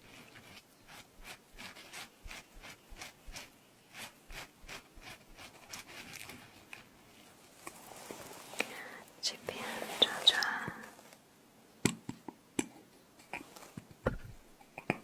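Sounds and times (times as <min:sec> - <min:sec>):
stiff brush scrubbing: 0:00.0 - 0:08.6.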